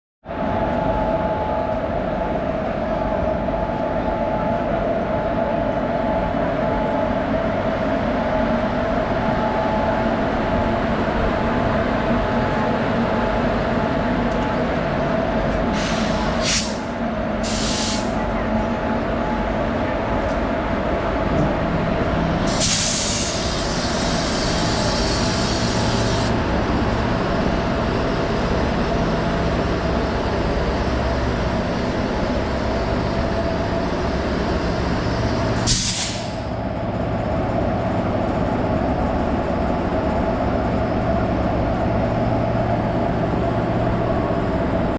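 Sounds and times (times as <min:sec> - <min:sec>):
electric locomotive whirring hum: 0:00.3 - 0:44.9
air hissing: 0:15.8 - 0:18.2, 0:22.5 - 0:26.4, 0:35.6 - 0:36.5.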